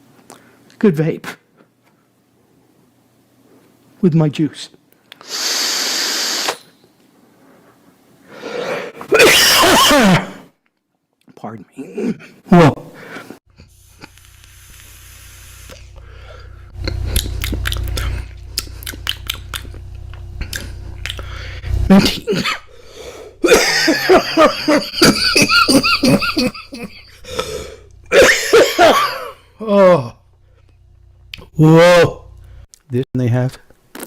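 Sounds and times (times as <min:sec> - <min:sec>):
soft vape hiss: 0:05.1 - 0:08.0, 0:13.6 - 0:16.8
man coughing: 0:09.1 - 0:10.4, 0:21.9 - 0:22.7, 0:23.4 - 0:30.2.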